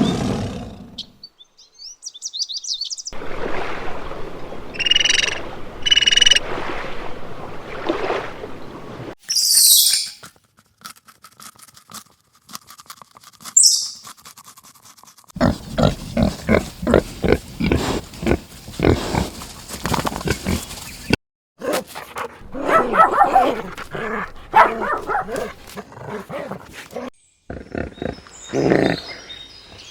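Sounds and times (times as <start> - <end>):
short high chirp: 9.3 - 10.2, 13.6 - 14.0
animal grunting calls: 15.4 - 29.3.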